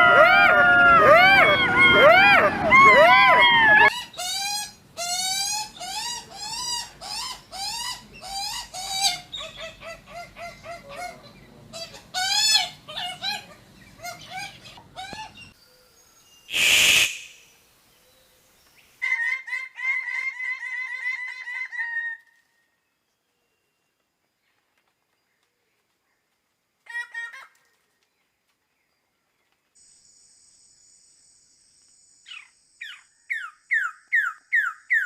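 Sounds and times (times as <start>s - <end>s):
brief hiss: 16.5s - 17.6s.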